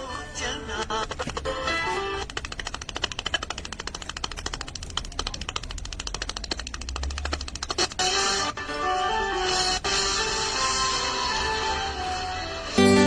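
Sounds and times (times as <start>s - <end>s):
rapid sharp clicks: 0.8s - 1.6s, 2.2s - 8.6s.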